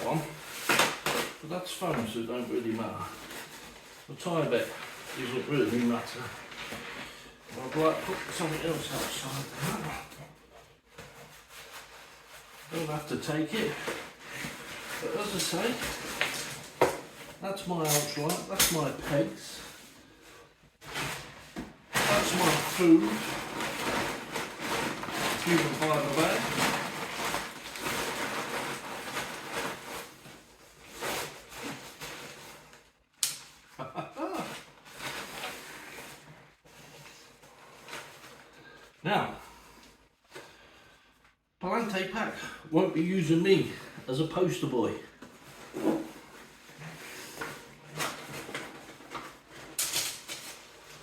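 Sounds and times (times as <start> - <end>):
fabric rustling and scraping: 2.0 - 33.0.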